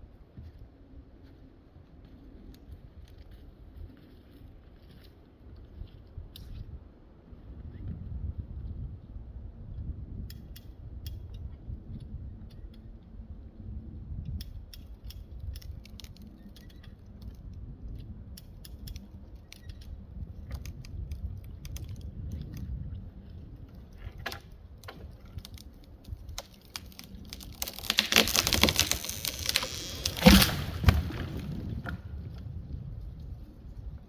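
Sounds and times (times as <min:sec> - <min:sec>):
wood cracking and snapping: 0:23.7 - 0:32.4
tree crashing down: 0:26.3 - 0:32.2.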